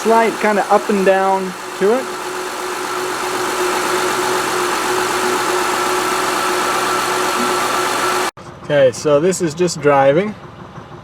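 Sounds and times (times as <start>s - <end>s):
car engine idling: 0.0s - 8.3s.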